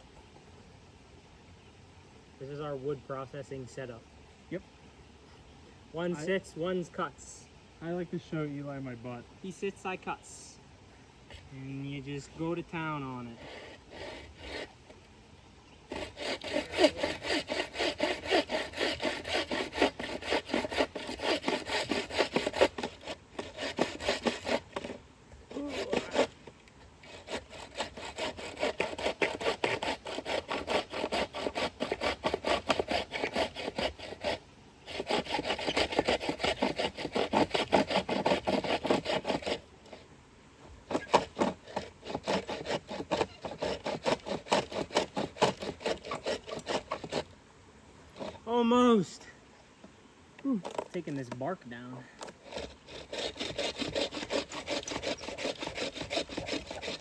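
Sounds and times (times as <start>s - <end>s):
hand saw cutting log: 6.0s - 7.1s, 11.3s - 15.0s, 15.9s - 47.4s, 48.1s - 49.0s, 50.5s - 57.0s.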